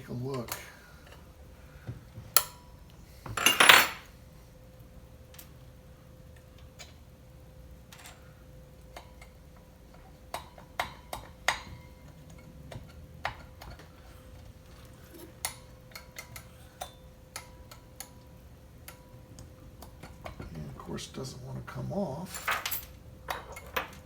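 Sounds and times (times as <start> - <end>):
faint steady hum: 0.0 - 24.0
metallic clicks and taps of tools: 15.4 - 20.5.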